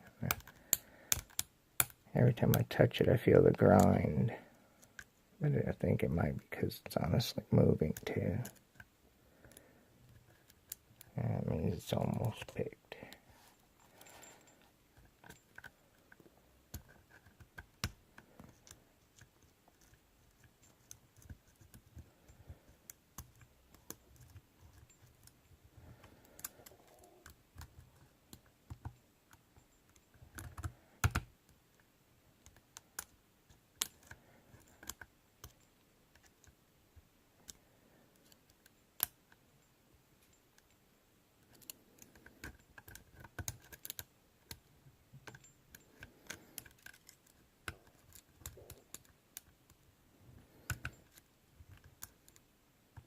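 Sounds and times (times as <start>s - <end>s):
lock pick clicking and scraping: 0.3s - 2.0s, 7.9s - 11.1s, 13.1s - 31.8s, 32.4s - 36.6s, 41.4s - 49.8s, 50.4s - 53.0s.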